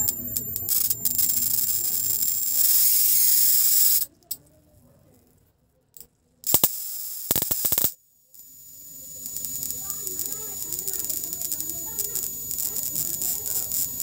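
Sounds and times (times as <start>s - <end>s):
thin high whine: 0.0s - 3.1s, 7.7s - 14.0s
electric snaps: 6.4s - 8.0s, 8.9s - 14.0s
electric discharge crackling: 7.3s - 8.0s, 8.9s - 14.0s.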